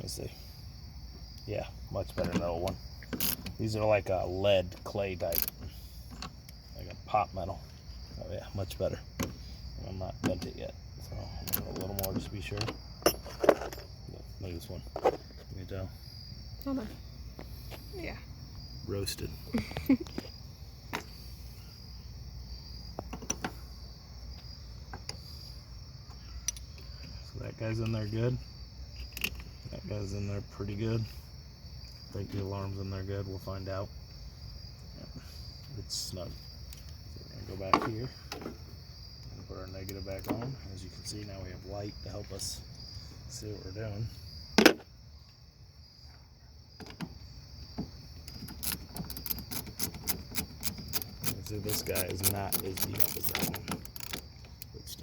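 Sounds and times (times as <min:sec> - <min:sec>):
crickets chirping: 0:00.0 - 0:55.0
tool clicking and tapping metal: 0:48.3 - 0:54.7.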